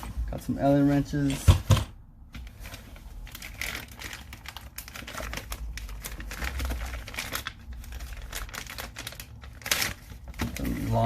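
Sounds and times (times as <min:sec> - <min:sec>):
packaging rustling: 0:02.4 - 0:11.0.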